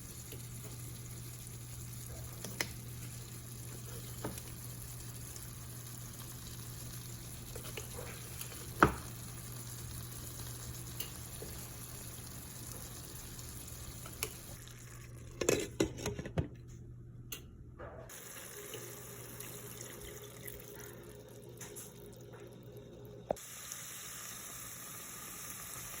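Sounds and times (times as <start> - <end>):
tap running into sink: 8.6 - 9.2.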